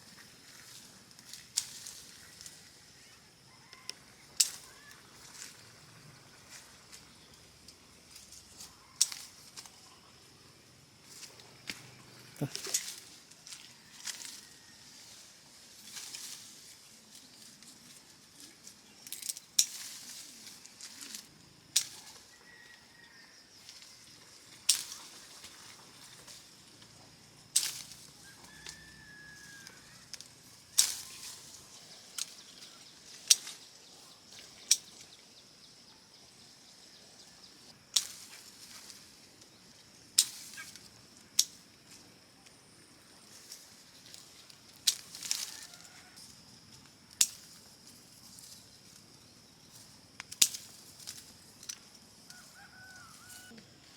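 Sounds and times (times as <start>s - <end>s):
faint bird chirps: 2.1s - 7.6s.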